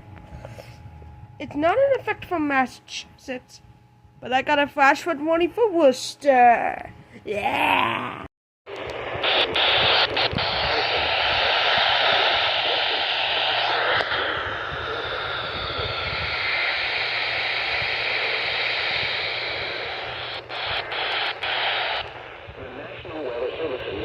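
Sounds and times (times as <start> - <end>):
sharp clicks: 8.7 - 10.4
radio static hiss: 8.7 - 24.0.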